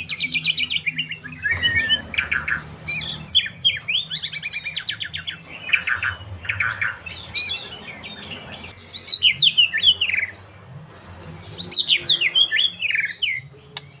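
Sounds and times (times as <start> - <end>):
songbird chirping and whistling: 0.0 - 14.0.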